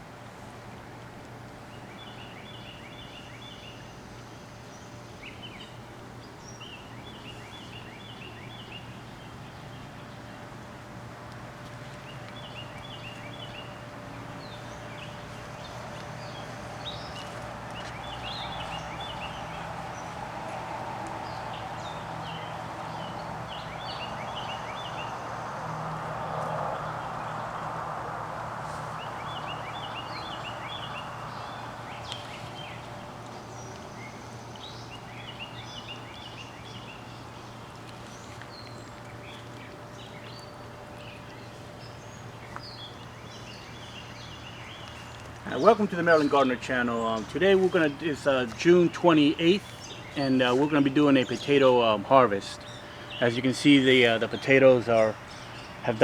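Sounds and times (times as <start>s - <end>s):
bird chirping: 12.4s - 25.6s, 28.9s - 56.0s.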